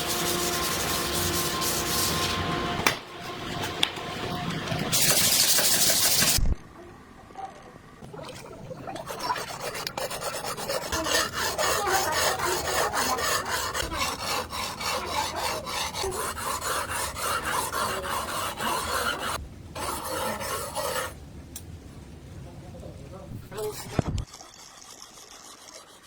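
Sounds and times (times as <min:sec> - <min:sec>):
hand sanding rasping strokes: 0:00.0 - 0:02.5, 0:04.9 - 0:06.4, 0:09.0 - 0:21.2.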